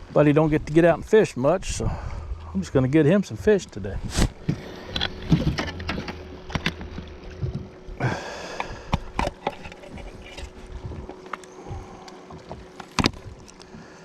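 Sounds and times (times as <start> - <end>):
faint steady hum: 0.0 - 14.0
clicks and knocks in a boat: 3.5 - 14.0.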